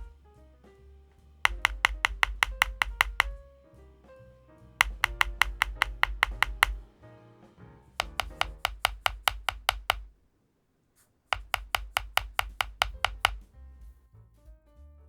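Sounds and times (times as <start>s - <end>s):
keyboard key presses clicking: 1.5s - 3.4s, 4.8s - 6.8s, 8.0s - 10.2s, 11.3s - 13.4s.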